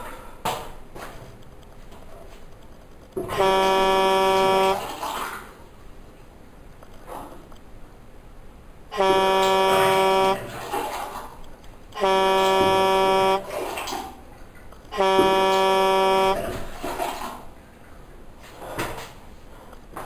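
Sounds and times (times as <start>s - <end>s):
horn blasts: 3.2s - 5.1s, 8.9s - 11.0s, 11.9s - 14.0s, 14.8s - 17.0s.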